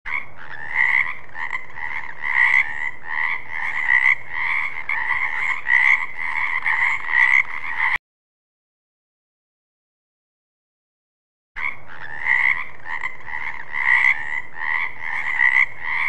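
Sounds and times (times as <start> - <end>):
frog croaking: 0.1 - 8.0, 11.6 - 16.0.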